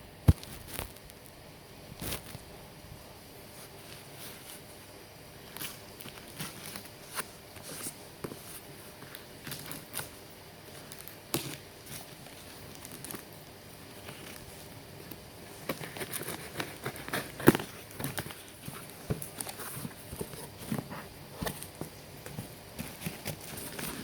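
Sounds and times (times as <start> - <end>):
packaging taps and crinkles: 14.1 - 24.0.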